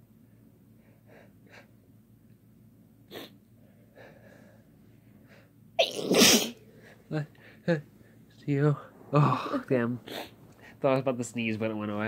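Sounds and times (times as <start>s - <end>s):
person sneezing: 5.8s - 6.6s.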